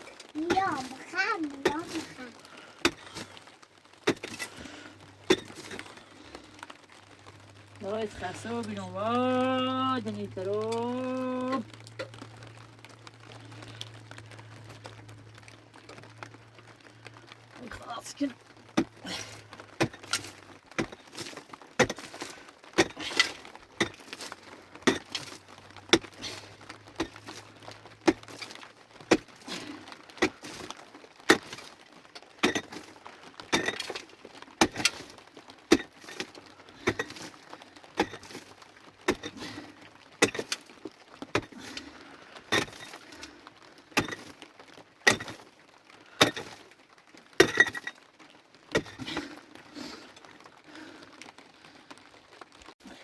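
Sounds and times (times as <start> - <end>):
sharp cracks and knocks: 0.0 - 7.7, 18.3 - 51.4.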